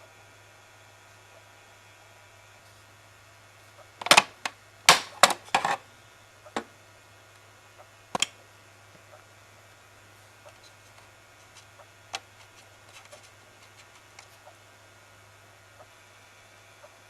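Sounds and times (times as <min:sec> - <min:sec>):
faint mains hum: 0:00.0 - 0:17.0
plastic vacuum parts clicking: 0:04.0 - 0:05.8.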